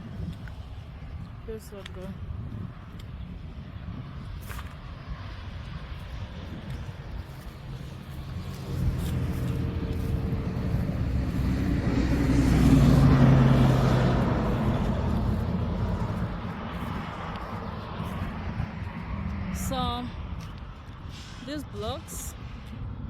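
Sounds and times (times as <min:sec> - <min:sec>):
motor vehicle driving past: 0:07.4 - 0:19.8.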